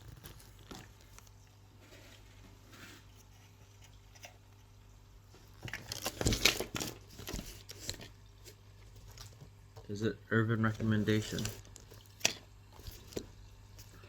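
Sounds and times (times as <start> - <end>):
low room hum: 0.0 - 14.0.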